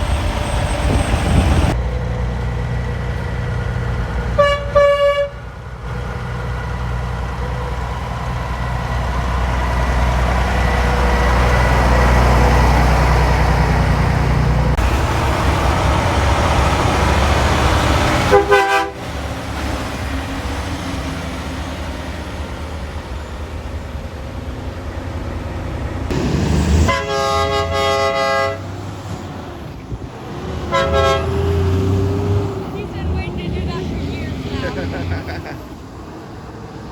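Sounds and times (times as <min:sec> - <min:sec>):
trucks passing by: 0:00.0 - 0:36.9
truck horn: 0:04.3 - 0:05.6, 0:14.8 - 0:19.2, 0:26.7 - 0:28.7, 0:30.7 - 0:35.2.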